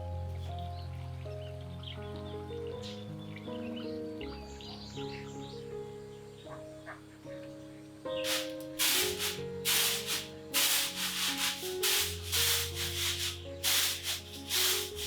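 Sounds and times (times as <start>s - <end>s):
soft background music: 0.0s - 15.0s
rough scraping strokes: 8.2s - 15.0s.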